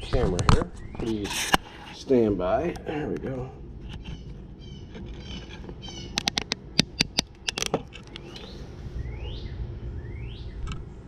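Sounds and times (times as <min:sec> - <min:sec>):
high-pitched animal calls: 0:04.0 - 0:06.4
camera mount clicks and knocks: 0:06.1 - 0:08.3
rising chirps: 0:08.2 - 0:11.0.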